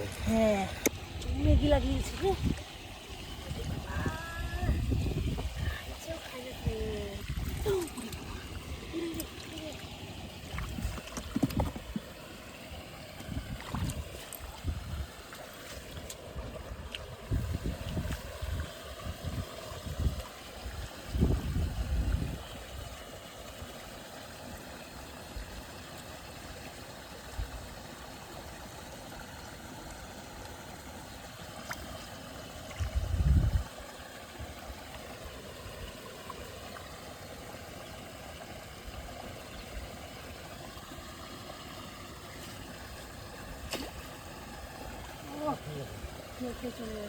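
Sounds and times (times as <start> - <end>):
wind buffeting microphone: 3.4 - 7.8, 17.2 - 20.2, 21.1 - 22.4, 32.8 - 33.7.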